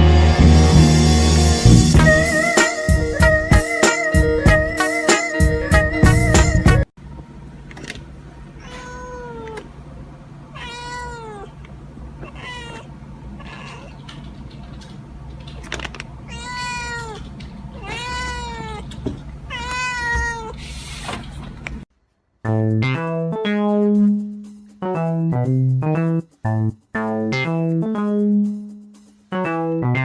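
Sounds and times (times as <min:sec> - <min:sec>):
cat meowing: 0:08.6 - 0:09.7, 0:10.5 - 0:14.1, 0:16.3 - 0:20.7.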